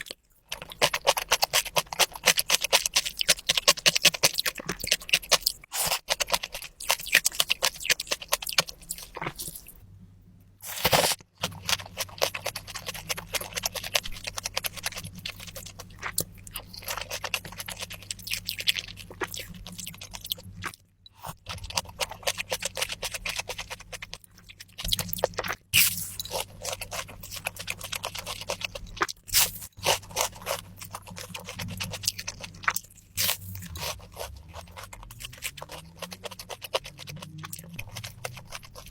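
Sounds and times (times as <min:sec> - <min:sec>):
crunching and chewing food: 0:00.0 - 0:38.9
steady low hum: 0:00.0 - 0:38.9
scraping sounds: 0:10.6 - 0:11.2.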